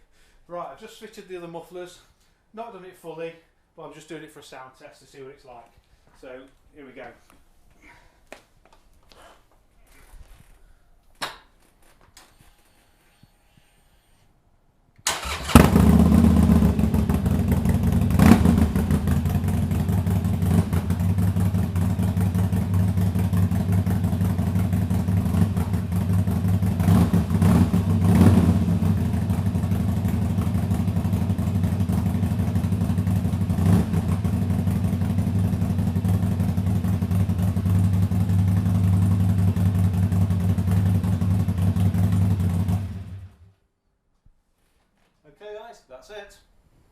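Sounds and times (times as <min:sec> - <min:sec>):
motorcycle throttle blips: 0:15.0 - 0:43.4
motorcycle engine idling: 0:15.1 - 0:43.4.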